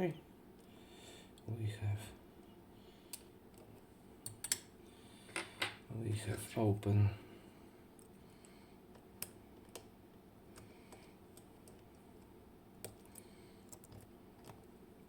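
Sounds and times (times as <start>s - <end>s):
small metal clicks of lock tools: 4.2s - 4.7s.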